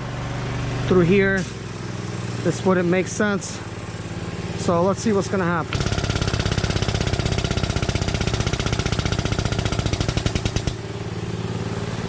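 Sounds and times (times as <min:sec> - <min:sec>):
steady engine hum: 0:00.0 - 0:12.0
fast mechanical rattle: 0:05.7 - 0:11.0.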